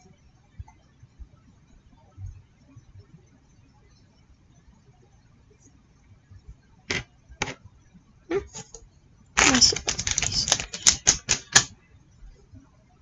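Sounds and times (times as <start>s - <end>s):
lego pieces clicking and rattling: 6.9s - 7.6s, 9.4s - 11.7s.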